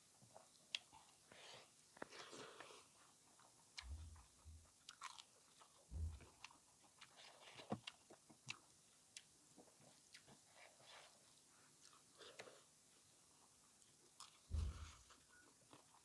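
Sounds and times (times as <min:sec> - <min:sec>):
chewing and eating sounds: 0:00.1 - 0:16.0
soft low thuds: 0:03.8 - 0:04.7, 0:05.9 - 0:06.4, 0:14.5 - 0:15.1.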